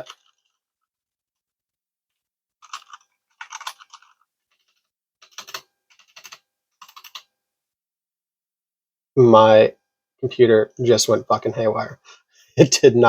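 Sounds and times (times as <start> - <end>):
mechanical keyboard typing: 2.6 - 7.3.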